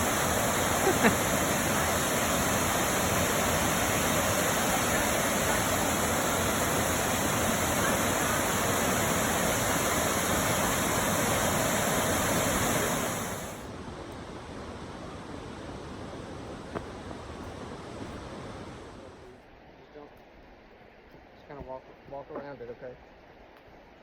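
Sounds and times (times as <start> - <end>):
waterfall rushing: 0.0 - 13.6.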